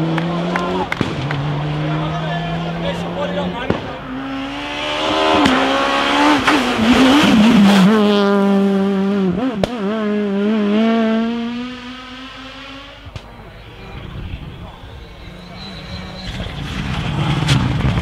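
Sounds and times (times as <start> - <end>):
rally car engine passing: 0.0 - 18.0
exhaust cracks: 16.2 - 18.0.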